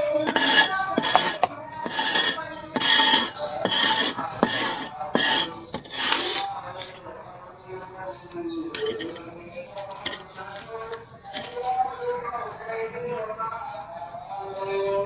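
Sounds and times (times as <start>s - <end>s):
metallic scraping strokes: 0.0s - 7.0s, 8.8s - 9.2s, 9.8s - 11.8s.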